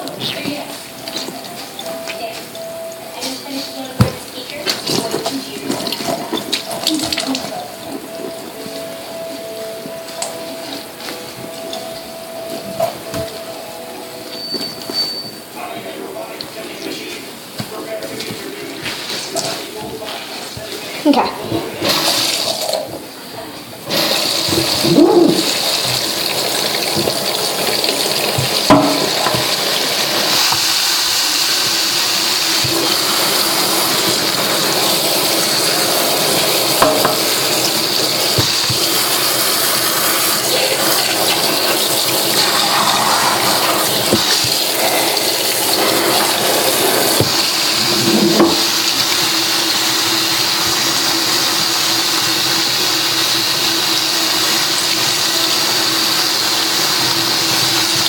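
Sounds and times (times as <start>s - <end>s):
water running from a tap: 3.2s - 8.4s, 18.9s - 23.0s, 23.8s - 58.0s.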